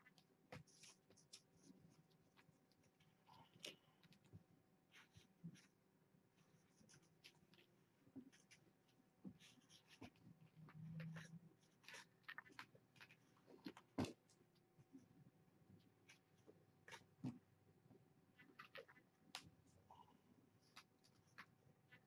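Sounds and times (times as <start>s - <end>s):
kittens scratching and clicking: 9.3s - 14.6s, 18.4s - 19.8s, 20.6s - 22.0s.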